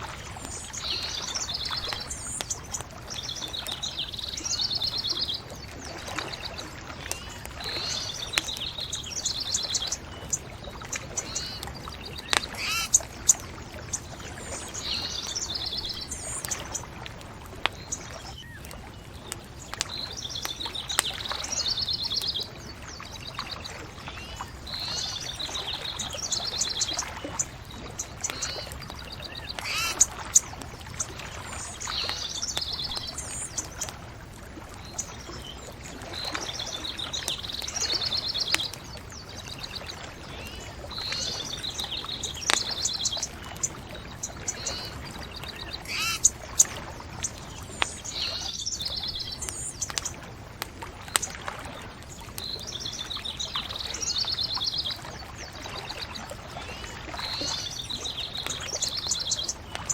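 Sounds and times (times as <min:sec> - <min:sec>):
bonfire crackling pops: 0:00.0 - 0:04.4, 0:06.9 - 0:21.3, 0:26.1 - 0:36.0, 0:36.6 - 0:39.2, 0:40.2 - 0:44.3, 0:46.2 - 0:48.2, 0:48.8 - 0:53.4
songbird trilling: 0:00.4 - 0:05.5, 0:06.1 - 0:16.8, 0:24.2 - 0:33.9, 0:39.5 - 0:50.1.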